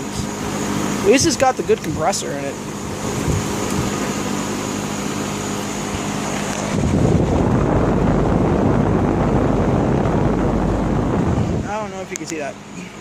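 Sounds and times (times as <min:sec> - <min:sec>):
air conditioner humming: 0:00.0 - 0:13.0
wind on microphone: 0:02.9 - 0:04.2, 0:05.9 - 0:11.8.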